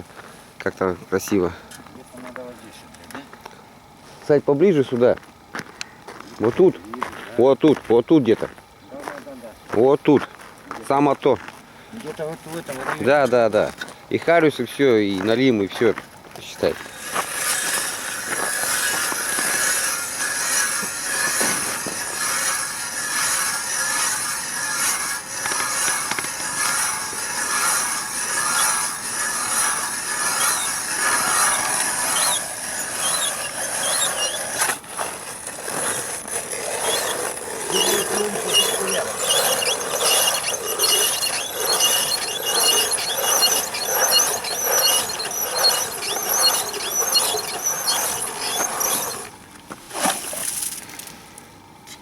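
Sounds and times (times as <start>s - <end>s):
ice auger grinding through ice: 16.9s - 50.3s.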